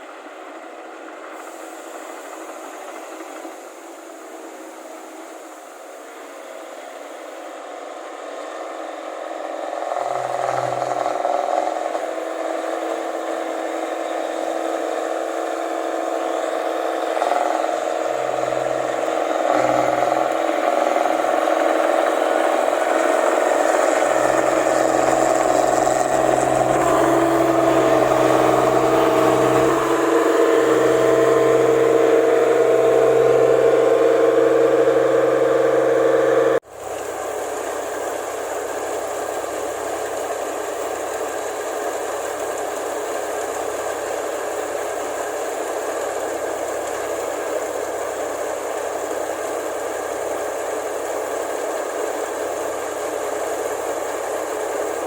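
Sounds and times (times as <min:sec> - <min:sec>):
harvester diesel engine under load: 0:00.0 - 0:55.0.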